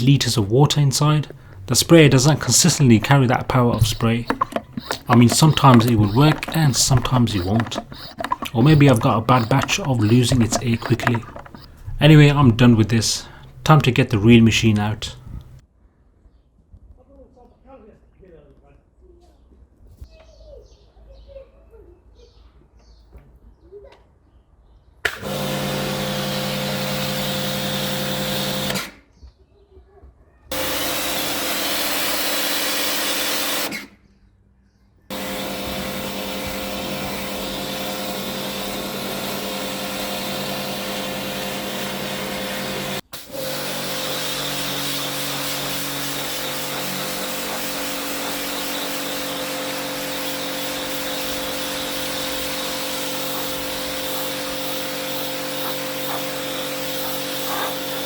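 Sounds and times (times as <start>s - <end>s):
pressure washer humming and hissing: 0.0s - 15.6s, 25.1s - 28.9s, 30.5s - 33.8s, 35.1s - 58.0s.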